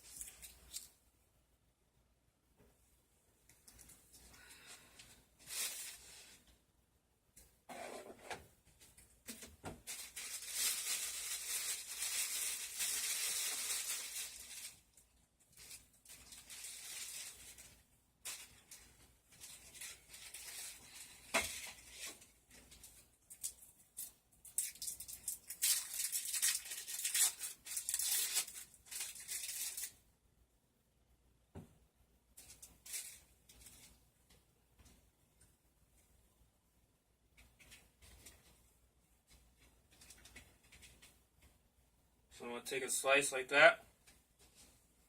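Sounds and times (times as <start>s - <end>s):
plastic wrapping crinkling: 0.0s - 1.0s, 5.4s - 6.4s, 9.3s - 30.0s, 32.4s - 34.0s.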